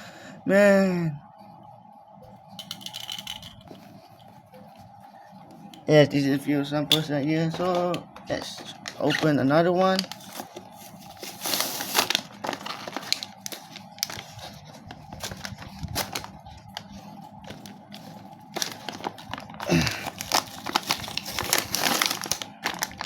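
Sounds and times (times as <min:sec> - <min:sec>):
packaging crinkling and tearing: 0:08.3 - 0:23.0.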